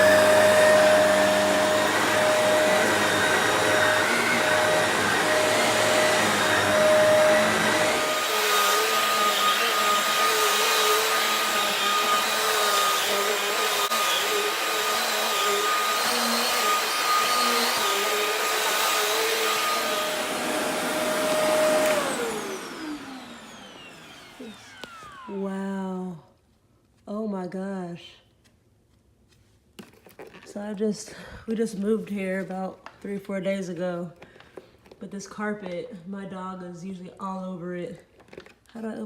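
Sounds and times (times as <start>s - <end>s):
upright vacuum cleaner running: 0.0s - 25.5s
motor winding down whine: 19.6s - 25.4s.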